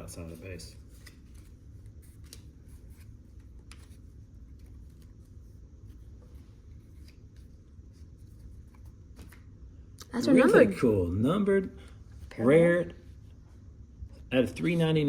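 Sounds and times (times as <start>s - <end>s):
low room hum: 0.0s - 15.0s
trading cards flipped by hand: 0.9s - 6.0s, 8.4s - 9.5s.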